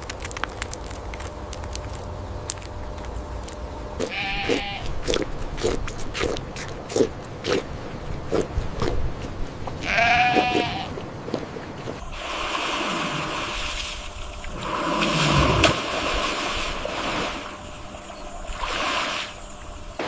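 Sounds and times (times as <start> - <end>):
farm animal bleating: 4.0 - 5.0, 9.8 - 11.0.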